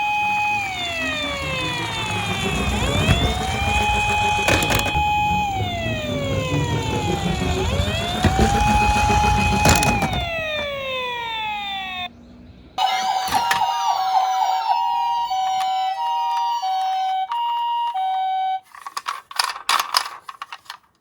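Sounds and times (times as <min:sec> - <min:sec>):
siren wailing: 0:00.0 - 0:12.2, 0:12.8 - 0:18.7
toy cars rolling down plastic slope: 0:00.2 - 0:05.6, 0:06.3 - 0:10.8, 0:14.4 - 0:21.0.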